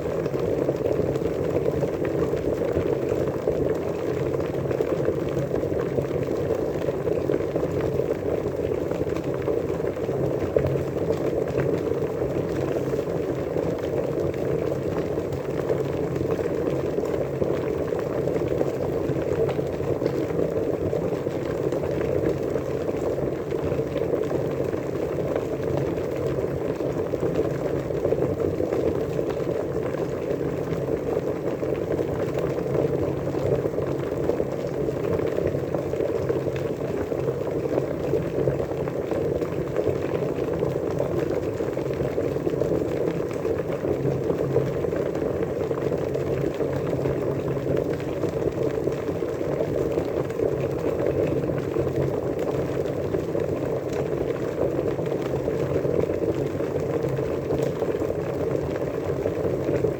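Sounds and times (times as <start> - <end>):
water boiling: 0.0 - 59.9.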